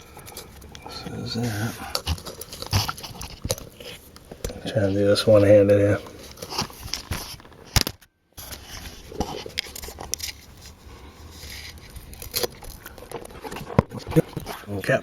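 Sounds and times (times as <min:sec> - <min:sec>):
metallic clicks and scrapes: 0:06.2 - 0:14.7.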